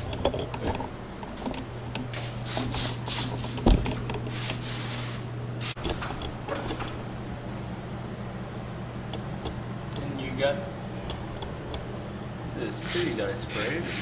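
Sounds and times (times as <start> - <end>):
steady low hum: 0.0 - 14.0
aerosol can spraying: 4.3 - 5.8.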